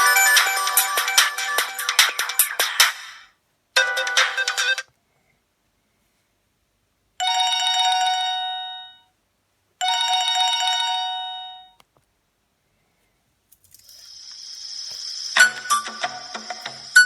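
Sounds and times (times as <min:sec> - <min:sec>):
warbling electronic phone ringtone: 0:00.0 - 0:02.6, 0:14.1 - 0:17.0.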